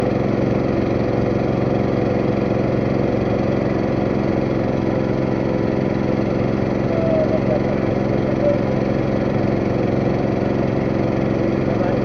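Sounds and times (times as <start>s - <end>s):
boat engine droning: 0.0s - 12.0s.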